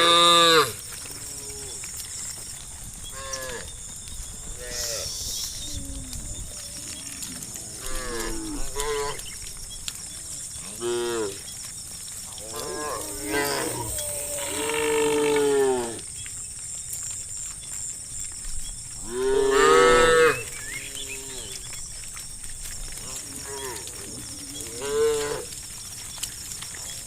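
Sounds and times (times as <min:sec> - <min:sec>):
cows mooing: 0:00.0 - 0:02.1, 0:04.4 - 0:09.4, 0:10.0 - 0:11.5, 0:12.3 - 0:16.1, 0:19.0 - 0:21.8, 0:23.0 - 0:25.6
steady high hiss: 0:04.6 - 0:05.9.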